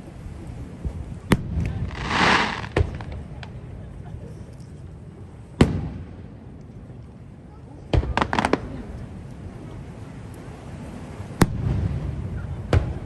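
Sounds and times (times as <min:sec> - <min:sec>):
fireworks bangs: 0:01.3 - 0:03.6, 0:05.6 - 0:06.2, 0:07.9 - 0:08.9, 0:11.4 - 0:13.0
fireworks hissing: 0:01.5 - 0:03.7, 0:07.9 - 0:08.9.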